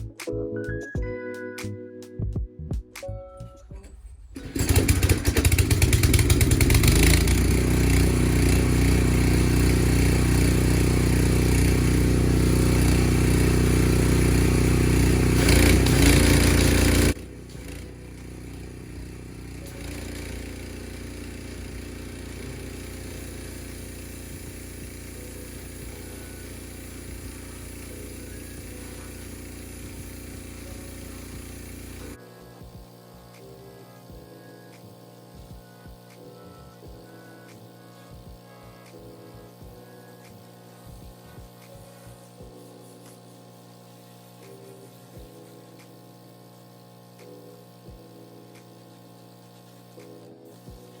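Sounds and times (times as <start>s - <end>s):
pressure washer spraying: 4.4s - 32.2s, 40.4s - 51.0s.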